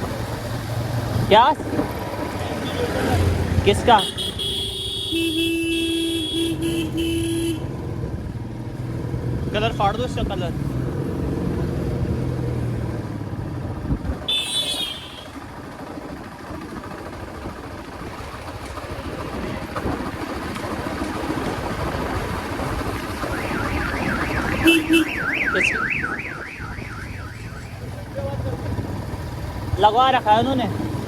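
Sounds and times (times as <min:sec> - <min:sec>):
motorcycle engine and road noise: 0:00.0 - 0:31.0
vehicle alarm warbling: 0:23.0 - 0:28.2.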